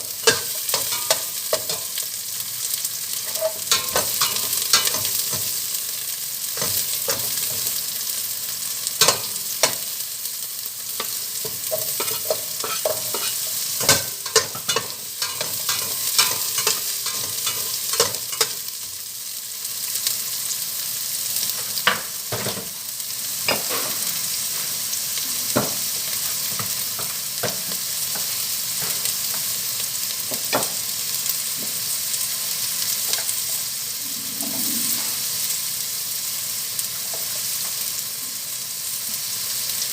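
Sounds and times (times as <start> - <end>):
meat sizzling in a pan: 0.0 - 39.9
utensil scraping a pan: 11.0 - 18.6.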